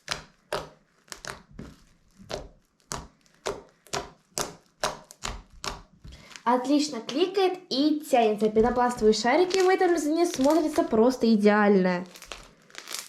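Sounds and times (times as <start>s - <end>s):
slime clicking and popping: 0.0s - 6.4s, 9.0s - 11.0s, 12.1s - 13.0s.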